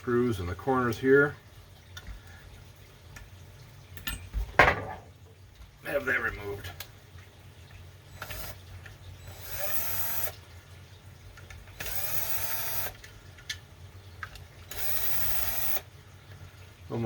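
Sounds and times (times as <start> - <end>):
cordless drill whirring: 8.1 - 8.6, 9.2 - 10.4, 11.8 - 13.0, 14.7 - 15.9.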